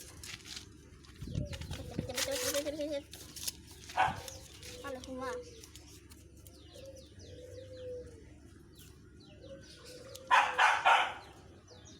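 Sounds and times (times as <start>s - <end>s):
dove-like cooing: 1.2s - 3.1s, 6.6s - 11.4s.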